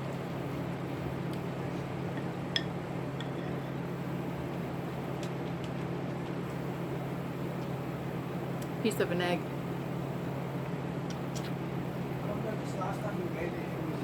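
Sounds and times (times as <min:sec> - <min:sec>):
low room hum: 0:00.0 - 0:14.0
faint clicks and taps from eating: 0:05.2 - 0:06.4.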